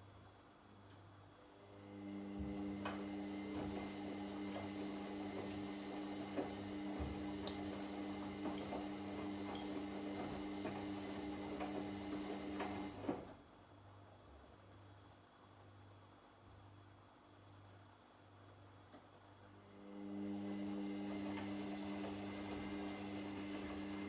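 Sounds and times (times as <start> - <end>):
washing machine motor humming: 1.6 - 13.3, 19.6 - 24.0.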